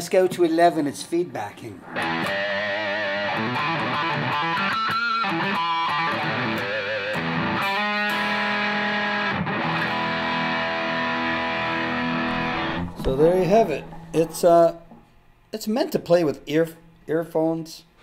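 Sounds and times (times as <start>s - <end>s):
distorted electric guitar: 1.8s - 15.1s.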